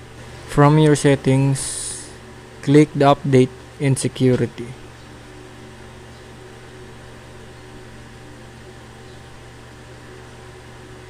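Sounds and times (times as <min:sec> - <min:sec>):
constant hiss: 0:00.0 - 0:11.0
low hum: 0:00.0 - 0:11.0.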